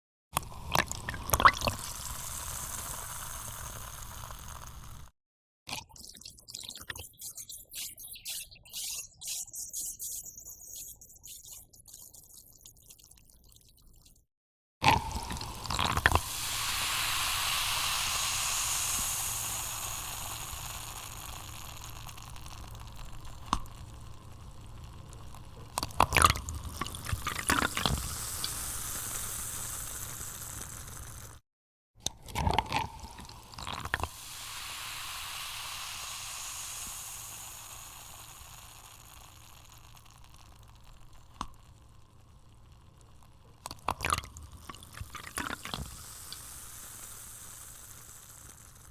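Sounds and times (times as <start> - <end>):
soda fizzing: 0.5 - 5.1, 14.8 - 31.4, 32.4 - 41.6, 43.7 - 48.9.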